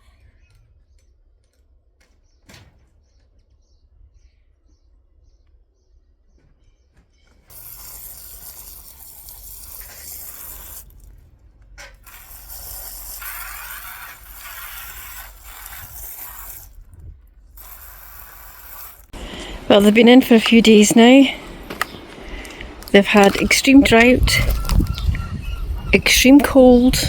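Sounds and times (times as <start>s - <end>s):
water spraying onto plants: 7.5s - 11.2s, 12.0s - 16.9s, 17.5s - 25.2s.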